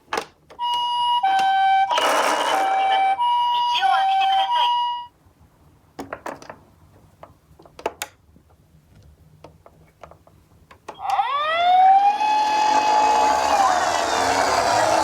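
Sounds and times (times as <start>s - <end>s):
toy ambulance electronic siren: 0.6s - 5.1s, 11.0s - 15.0s
toy cars clicking and knocking: 1.9s - 2.8s.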